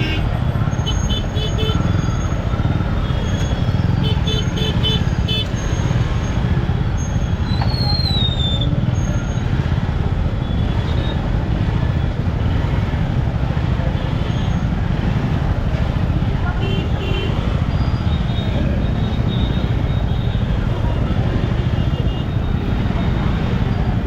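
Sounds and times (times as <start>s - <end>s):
horn beeps: 0.0s - 7.6s, 16.6s - 20.6s
motorcycle engine and wind rumble: 0.0s - 24.0s.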